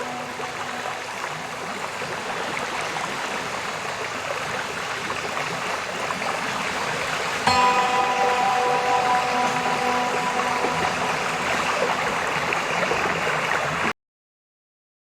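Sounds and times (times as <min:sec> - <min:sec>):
music: 0:00.0 - 0:01.8, 0:07.5 - 0:13.6
waterfall rushing: 0:00.0 - 0:04.3, 0:07.4 - 0:13.8.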